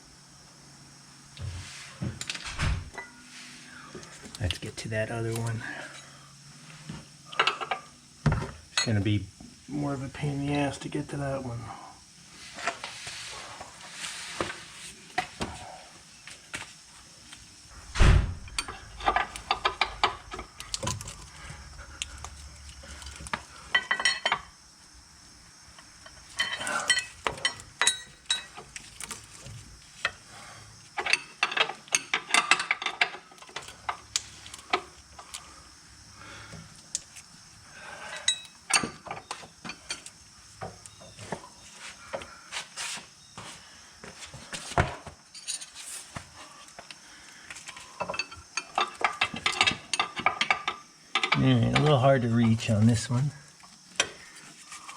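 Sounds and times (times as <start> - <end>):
heavy thump: 17.9 - 18.6
metal tools clinking: 18.4 - 21.3, 23.0 - 24.5, 26.4 - 28.7, 31.0 - 34.0, 38.2 - 40.1, 45.3 - 45.8, 48.0 - 53.0.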